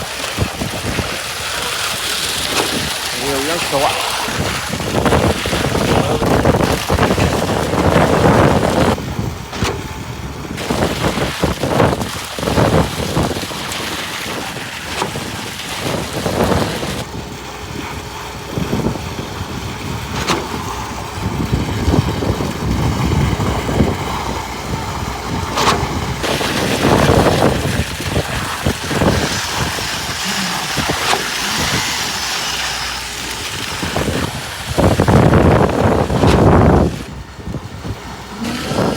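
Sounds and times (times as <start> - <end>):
noisy shifting rush: 17.8 - 38.9.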